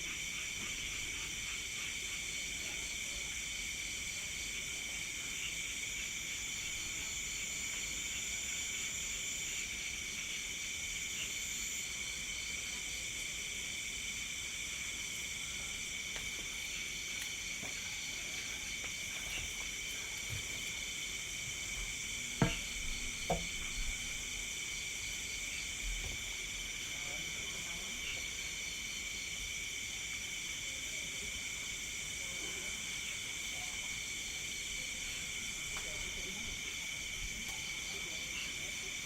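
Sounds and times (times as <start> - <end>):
crickets chirring: 0.0 - 39.0.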